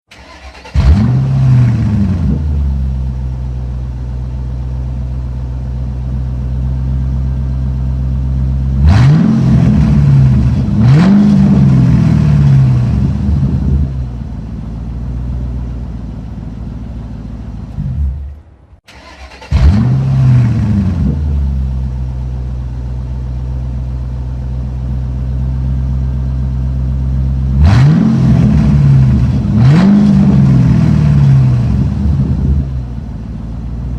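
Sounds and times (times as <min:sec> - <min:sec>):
car engine revving: 0:00.1 - 0:03.1, 0:08.6 - 0:14.7, 0:15.3 - 0:22.0, 0:27.3 - 0:33.8
car engine idling: 0:00.1 - 0:33.9
car engine starting: 0:00.1 - 0:33.9.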